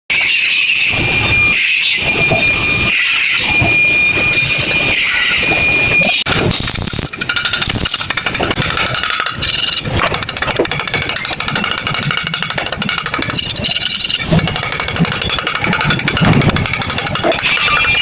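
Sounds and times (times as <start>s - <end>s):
arc welding crackle: 4.3s - 8.8s.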